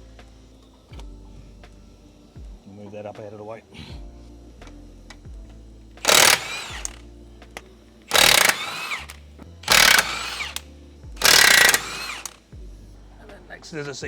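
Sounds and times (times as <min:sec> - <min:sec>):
impact wrench bursts: 0:06.0 - 0:10.6, 0:11.2 - 0:12.4.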